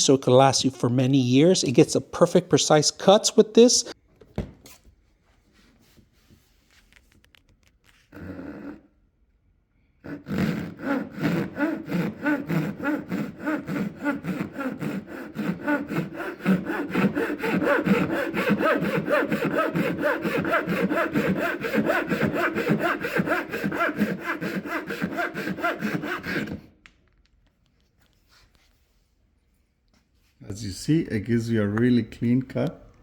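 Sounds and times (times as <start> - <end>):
hand saw cutting wood: 10.0 - 26.7.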